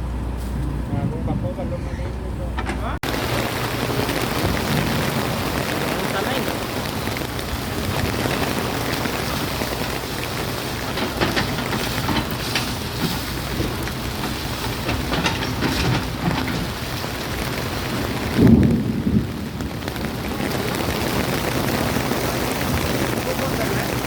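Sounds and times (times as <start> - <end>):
heavy low rush of water: 1.1 - 24.0
water splashing down: 3.0 - 24.0.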